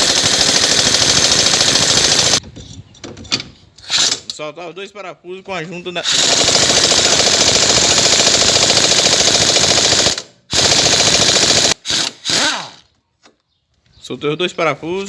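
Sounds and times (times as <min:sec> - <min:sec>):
impact wrench rattling: 0:00.0 - 0:02.4, 0:06.0 - 0:12.7.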